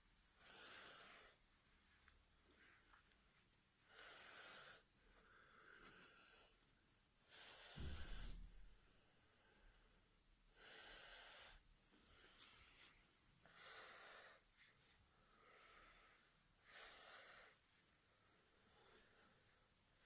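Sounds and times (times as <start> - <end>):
person breathing deeply: 7.2 - 9.9, 10.5 - 19.7.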